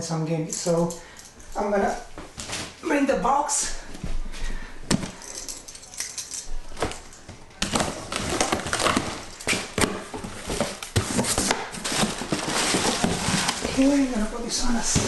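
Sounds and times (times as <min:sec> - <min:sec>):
packaging rustling and crinkling: 0:06.7 - 0:15.0.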